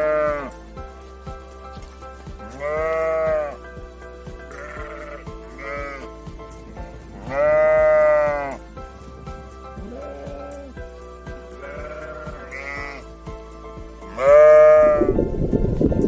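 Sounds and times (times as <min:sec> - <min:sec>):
sheep bleating: 0:00.0 - 0:00.6, 0:02.5 - 0:03.6, 0:04.4 - 0:06.1, 0:07.2 - 0:08.6, 0:09.8 - 0:10.8, 0:11.5 - 0:13.1
background music with beat: 0:00.0 - 0:16.0.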